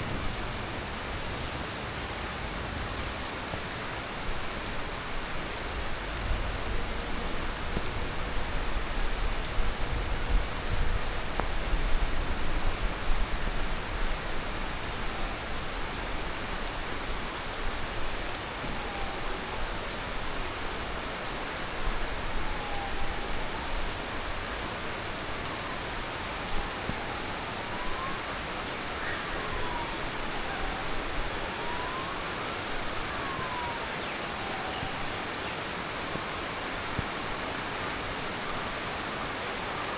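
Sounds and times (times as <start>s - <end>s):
heavy rain falling: 0.0s - 39.9s
faint siren wailing: 3.6s - 39.9s.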